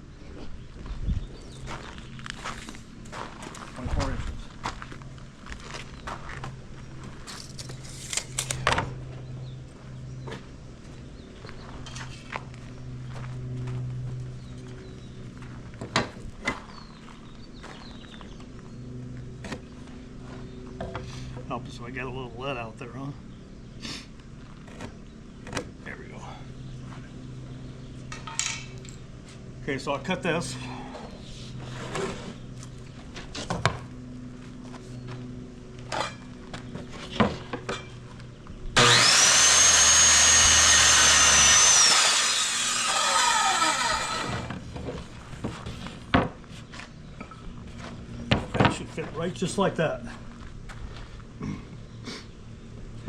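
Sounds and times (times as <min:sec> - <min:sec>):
steady low hum: 0:00.0 - 0:53.0
power saw cutting wood: 0:38.8 - 0:44.7.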